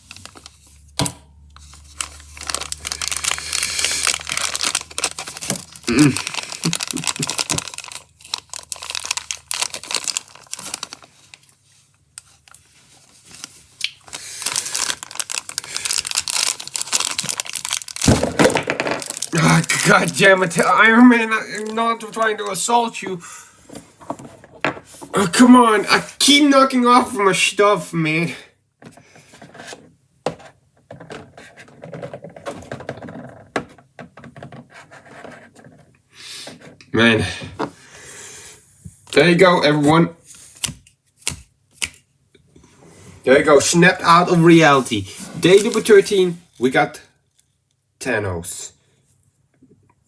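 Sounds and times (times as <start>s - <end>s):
plastic packaging crinkling: 0.0s - 0.9s, 1.6s - 23.0s, 44.1s - 46.3s.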